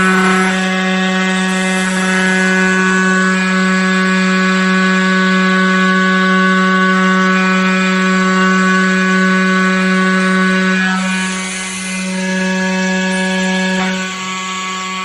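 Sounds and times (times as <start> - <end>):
hiss of cutting: 0.0 - 3.3, 10.2 - 14.1
constant whine: 0.0 - 3.9, 8.0 - 14.6
machine motor hum: 0.0 - 15.0.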